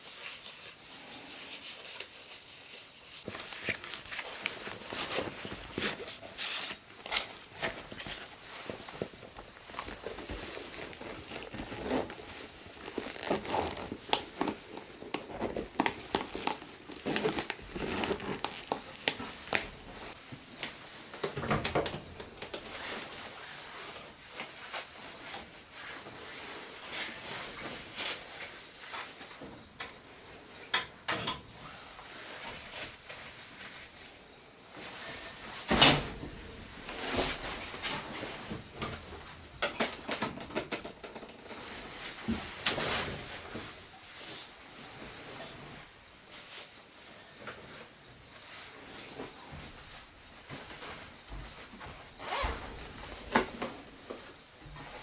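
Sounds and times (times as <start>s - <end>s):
objects clicking and tapping: 14.0s - 23.2s.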